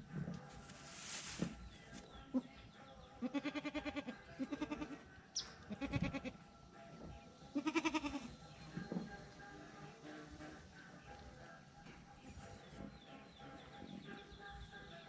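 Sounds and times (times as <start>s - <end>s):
goat kids bleating: 3.2s - 6.5s, 7.5s - 8.3s.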